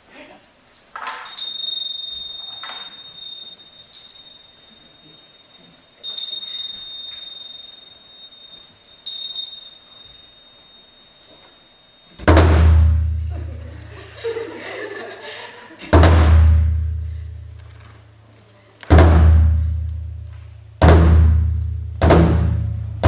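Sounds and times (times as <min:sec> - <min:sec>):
light tinkles: 0:01.0 - 0:12.3
metal chime ringing: 0:01.2 - 0:13.3.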